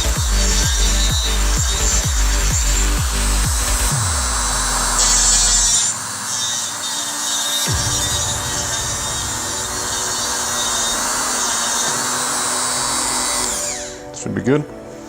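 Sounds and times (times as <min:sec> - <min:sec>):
power grinder whirring: 0:00.0 - 0:14.2.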